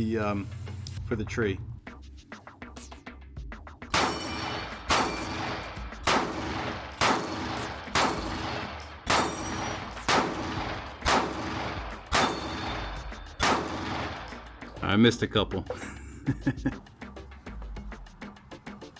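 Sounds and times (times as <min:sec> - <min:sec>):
pistol shots echoing: 0:03.9 - 0:14.8.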